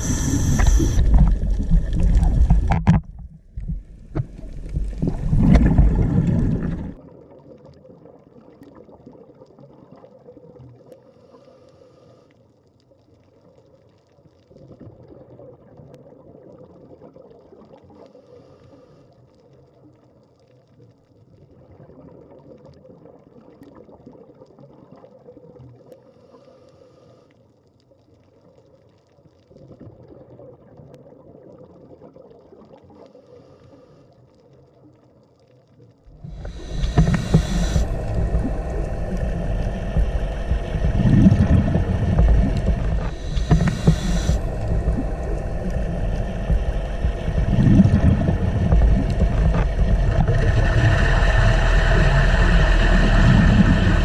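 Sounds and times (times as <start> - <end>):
exhaled bubbles rushing: 0.0 - 7.3, 36.1 - 54.0
underwater gurgle: 0.0 - 12.2, 12.8 - 26.6, 27.8 - 54.0.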